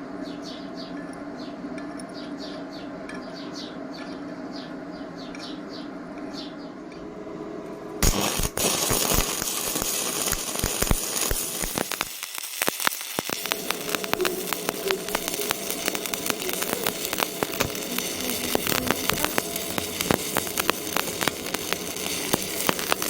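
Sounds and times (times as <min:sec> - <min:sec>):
steady hum: 0:00.0 - 0:23.0
stick welding arc crackling: 0:08.0 - 0:23.0.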